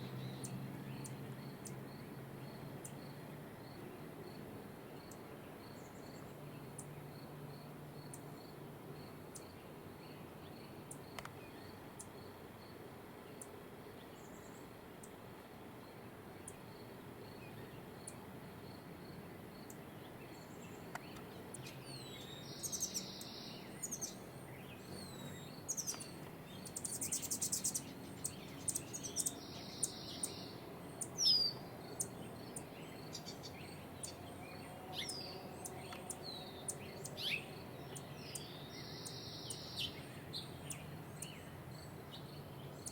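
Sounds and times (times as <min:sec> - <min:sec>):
songbirds chirping: 0:00.0 - 0:42.9
buzzy bird trill: 0:21.6 - 0:34.2.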